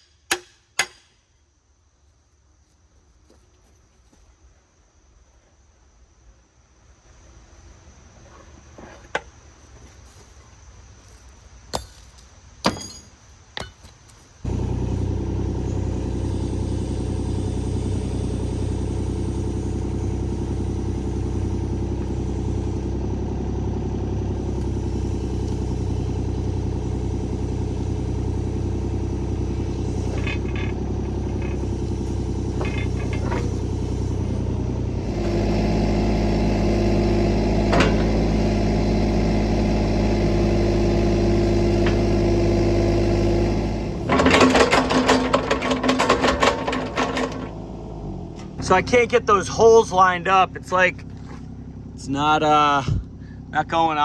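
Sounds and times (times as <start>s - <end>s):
diesel engine idling and revving: 14.4s - 54.0s.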